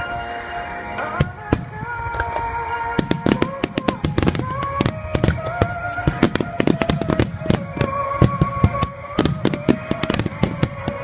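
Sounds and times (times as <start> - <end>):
music over loudspeakers: 0.0 - 11.0
fireworks booming: 0.9 - 11.0.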